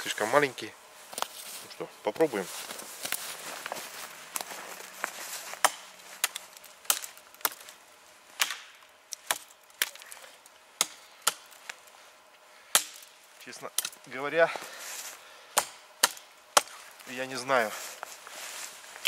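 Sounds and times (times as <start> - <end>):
hatchet chopping wood: 5.6 - 7.6, 8.4 - 10.0, 10.8 - 11.5, 12.7 - 13.1, 15.5 - 16.9.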